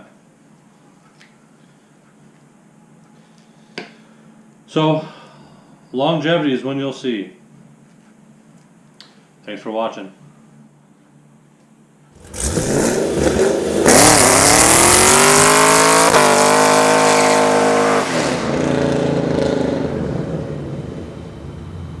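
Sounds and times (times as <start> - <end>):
car engine revving: 12.2 - 22.0.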